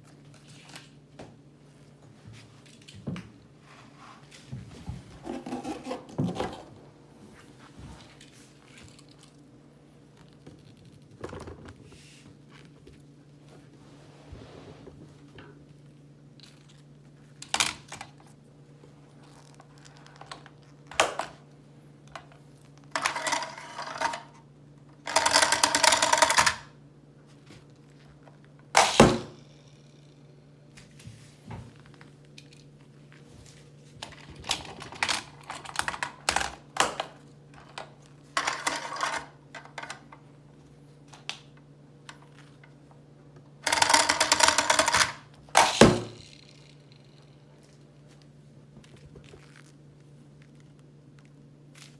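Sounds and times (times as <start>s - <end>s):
plastic toys rattling: 23.0s - 24.3s, 25.0s - 26.7s, 34.1s - 40.1s, 43.6s - 47.8s.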